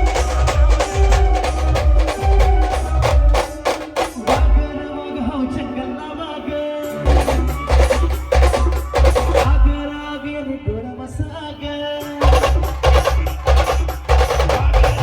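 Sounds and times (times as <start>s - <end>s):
heavy drumming: 0.0s - 4.8s, 7.1s - 10.0s, 12.0s - 15.0s
held melody line: 0.0s - 10.5s.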